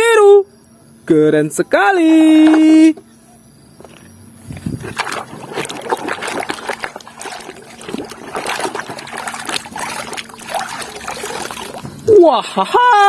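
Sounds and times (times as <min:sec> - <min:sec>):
water splashing and trickling: 0:04.5 - 0:12.1.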